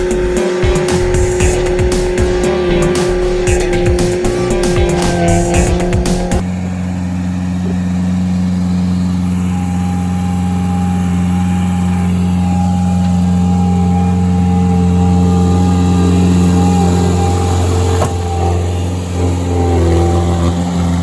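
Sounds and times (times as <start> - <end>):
loader engine humming: 0.0 - 21.0.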